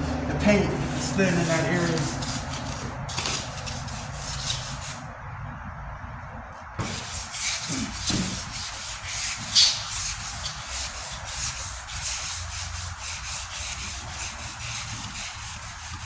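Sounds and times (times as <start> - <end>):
wet sandpaper rubbing on metal: 0.0 - 5.0, 6.8 - 16.0.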